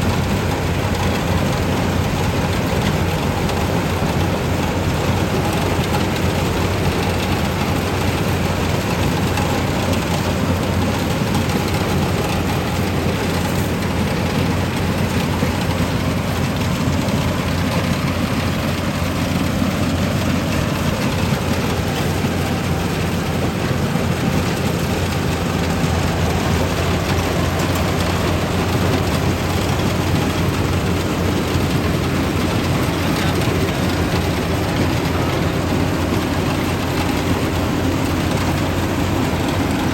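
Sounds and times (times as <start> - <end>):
diesel engine hum: 0.0 - 39.9
threshing machinery rushing: 26.6 - 39.9.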